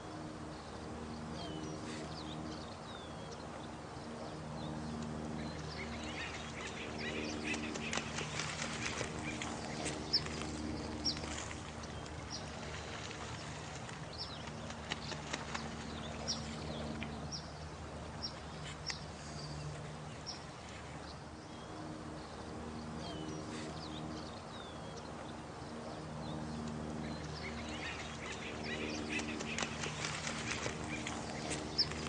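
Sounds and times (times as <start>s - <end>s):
running water: 5.0s - 22.4s, 26.9s - 32.0s
quick clicks and splashes: 29.0s - 32.0s.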